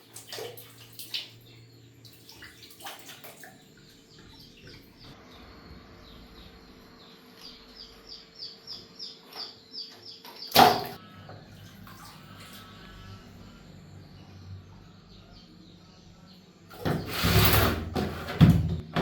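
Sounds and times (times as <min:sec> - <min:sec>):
bird chirping: 0:03.4 - 0:10.7, 0:12.3 - 0:17.3
faint steady hum: 0:11.0 - 0:16.8.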